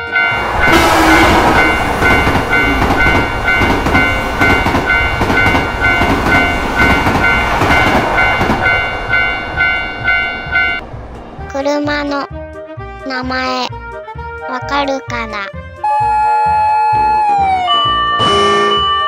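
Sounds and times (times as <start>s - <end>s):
level-crossing warning bell ringing: 0.0s - 10.8s, 15.9s - 19.0s
train rushing past rumbling: 0.0s - 11.6s.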